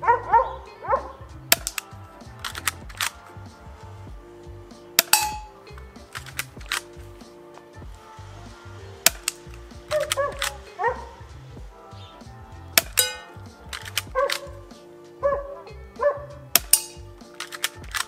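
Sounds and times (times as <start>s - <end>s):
background music: 0.0s - 18.0s
airsoft pistol shots: 1.5s - 1.8s, 5.0s - 5.5s, 9.1s - 10.6s, 12.8s - 14.5s, 16.6s - 18.0s.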